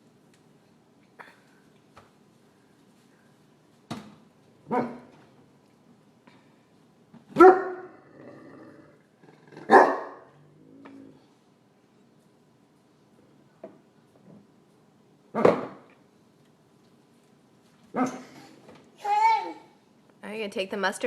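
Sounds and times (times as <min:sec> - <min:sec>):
dog barking: 0:04.7 - 0:05.1, 0:07.4 - 0:07.9, 0:09.7 - 0:10.3, 0:17.9 - 0:18.2.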